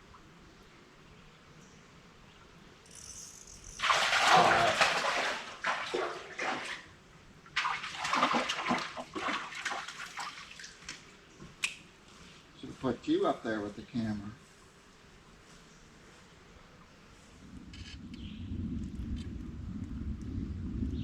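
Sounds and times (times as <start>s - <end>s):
water splashing: 3.8s - 11.1s.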